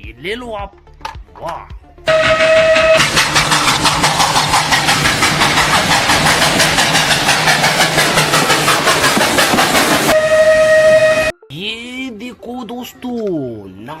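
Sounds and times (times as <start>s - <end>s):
engine idling: 2.1s - 11.3s.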